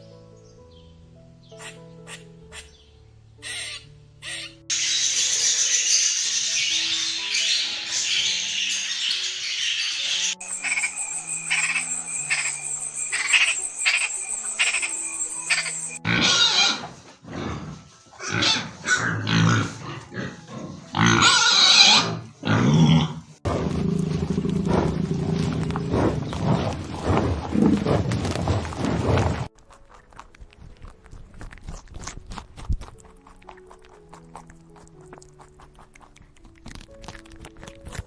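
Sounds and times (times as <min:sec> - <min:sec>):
rhythmic background music: 0:01.6 - 0:02.8, 0:03.4 - 0:16.6
loud animal calls: 0:03.4 - 0:04.6, 0:09.6 - 0:16.9.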